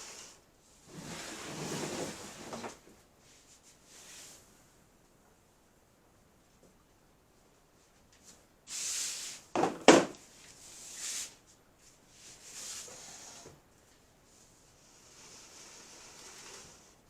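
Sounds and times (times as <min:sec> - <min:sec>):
objects scraping and sliding: 0:00.0 - 0:04.4, 0:10.3 - 0:13.6, 0:14.3 - 0:17.0.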